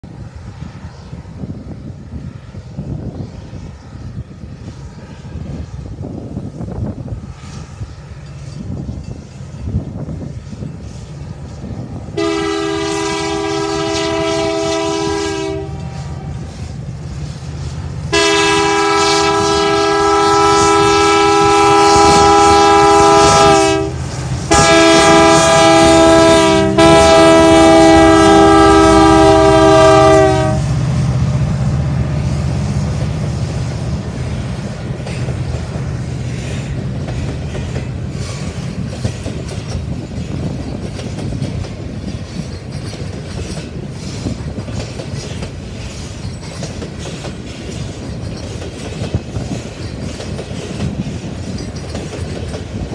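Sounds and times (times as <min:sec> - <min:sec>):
train rumble and wheel clatter: 0:00.0 - 0:52.9
locomotive air horn blasts: 0:12.2 - 0:16.6, 0:18.1 - 0:30.9.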